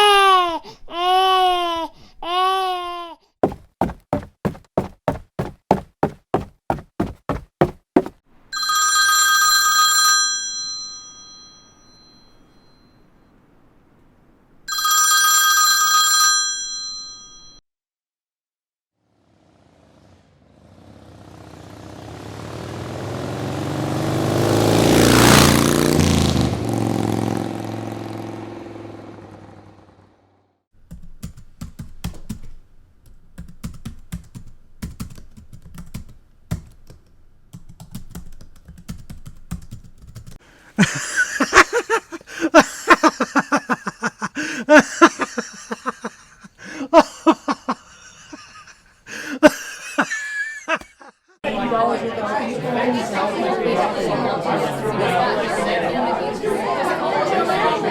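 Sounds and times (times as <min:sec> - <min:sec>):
telephone bell ringing: 0:08.5 - 0:13.0, 0:14.7 - 0:17.6
motorcycle passing by: 0:19.0 - 0:30.4
typing on computer keyboard: 0:30.8 - 0:40.4.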